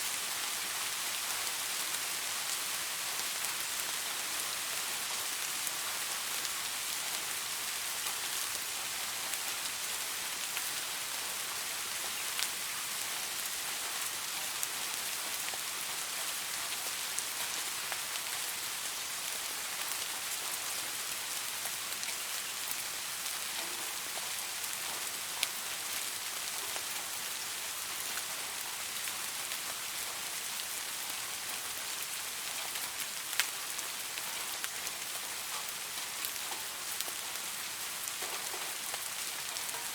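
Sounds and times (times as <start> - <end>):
steady rain hiss: 0.0 - 39.9
raindrops ticking nearby: 21.6 - 27.2, 31.5 - 39.9.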